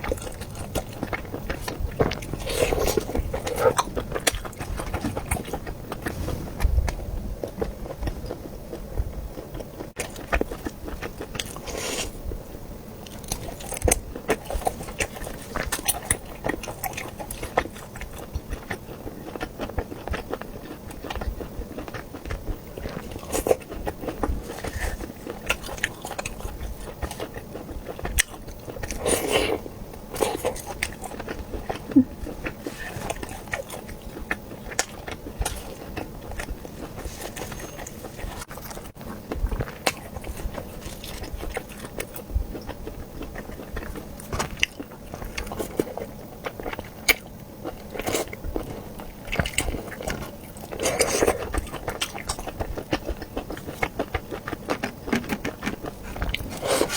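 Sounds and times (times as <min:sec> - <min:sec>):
person biting and chewing: 0:00.0 - 0:08.5, 0:49.3 - 0:56.9.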